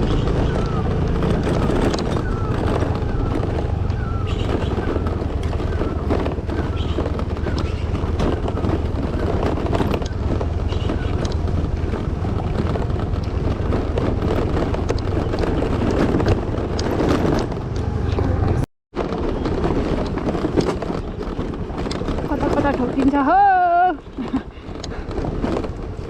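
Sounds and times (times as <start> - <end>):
knocks and rattles from bumps: 0.0 - 26.0
scooter engine hum: 0.0 - 26.0
wind buffeting microphone: 0.0 - 26.0.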